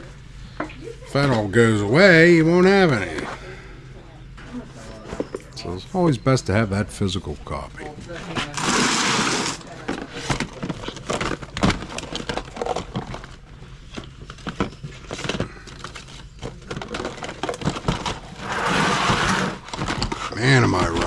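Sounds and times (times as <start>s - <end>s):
rustling hiss: 8.5s - 10.3s, 18.2s - 20.2s.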